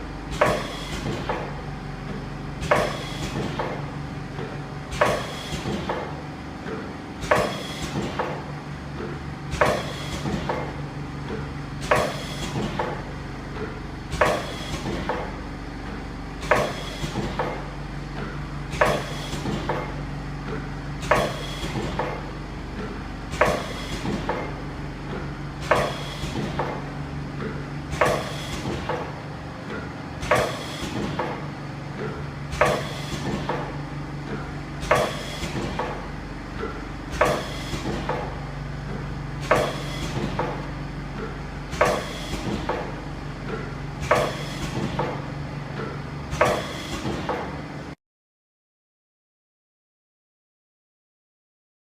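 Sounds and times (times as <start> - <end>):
machine low hum: 0.0 - 48.0
sharp mechanical clack: 0.3 - 1.5, 9.0 - 15.4, 16.4 - 45.2, 45.8 - 47.6.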